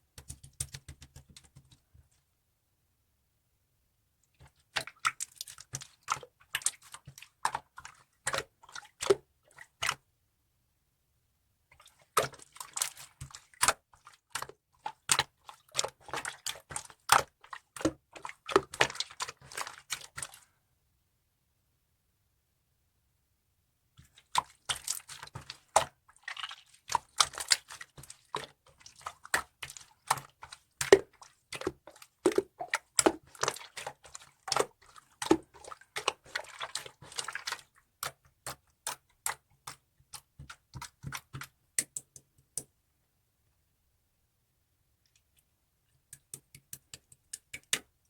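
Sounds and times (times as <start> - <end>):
slime squishing with clicking pops: 0.1 - 1.8, 37.9 - 42.7, 46.1 - 48.0.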